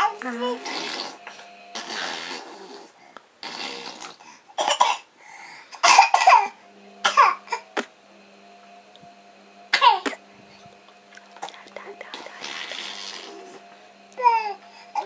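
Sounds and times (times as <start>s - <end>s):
baby making cough-like noises: 4.6s - 5.1s, 5.7s - 7.6s.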